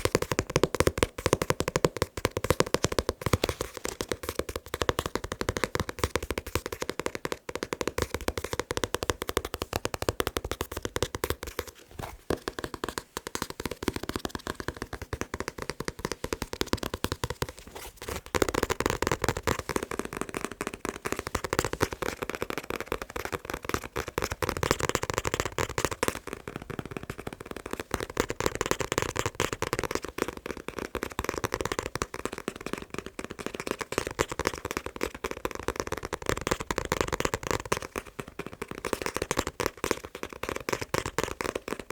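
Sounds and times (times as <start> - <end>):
rapid tapping on books: 0.0 - 41.9.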